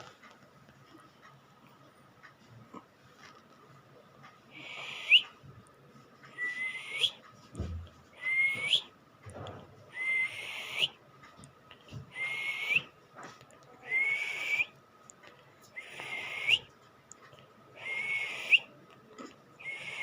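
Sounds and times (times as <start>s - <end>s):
ventilator breathing hiss and whistle: 4.5s - 5.4s, 6.3s - 7.2s, 8.1s - 9.0s, 9.9s - 11.0s, 12.1s - 13.0s, 13.8s - 14.8s, 15.8s - 16.7s, 17.7s - 18.8s, 19.6s - 20.0s.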